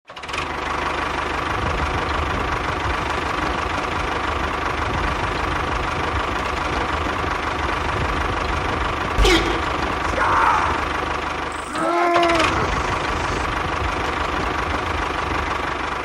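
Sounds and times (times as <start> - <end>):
engine running: 0.0 - 16.0.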